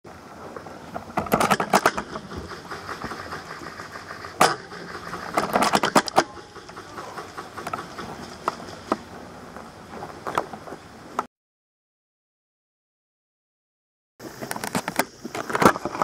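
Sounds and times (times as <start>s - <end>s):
steady low hiss: 0.1s - 11.3s, 14.2s - 16.0s
sharp clicks and rattles: 1.0s - 10.6s.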